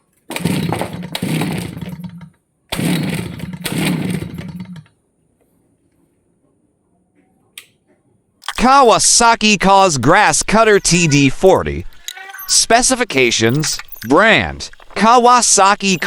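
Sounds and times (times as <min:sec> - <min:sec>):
brush cutter engine running: 0:00.3 - 0:04.9
click: 0:07.6 - 0:07.8.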